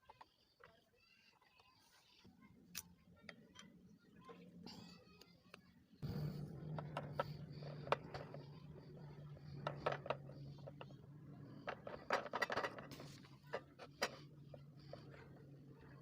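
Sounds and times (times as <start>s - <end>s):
steady low hum: 5.9s - 16.0s.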